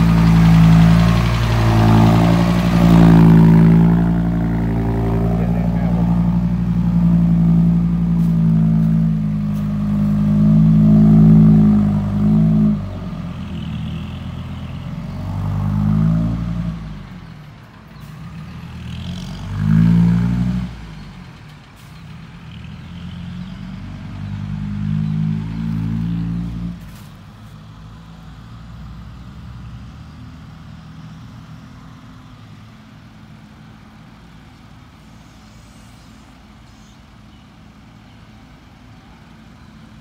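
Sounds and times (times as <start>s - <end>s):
heavy diesel engine revving: 0.0s - 27.1s.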